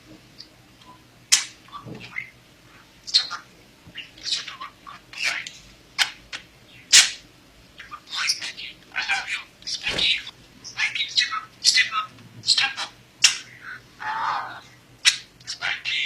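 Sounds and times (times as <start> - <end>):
budgerigar chirping and squeaking: 3.1 - 6.2, 6.8 - 7.2, 7.8 - 16.0.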